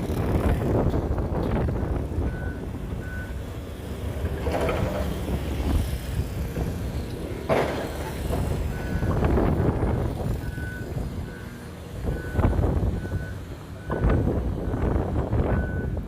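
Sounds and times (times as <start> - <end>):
heavy machinery running: 0.0 - 16.0
reversing alarm beeping: 2.2 - 3.5, 8.6 - 16.0.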